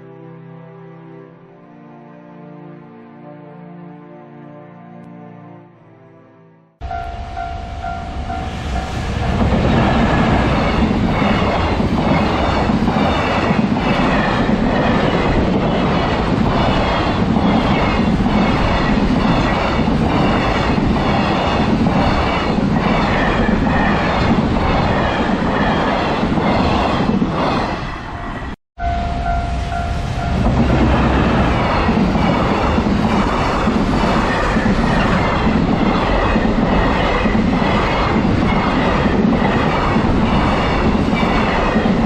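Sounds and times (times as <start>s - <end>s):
level crossing warning bell: 6.8s - 9.0s, 28.2s - 30.6s
freight train wheels clattering: 29.2s - 42.0s.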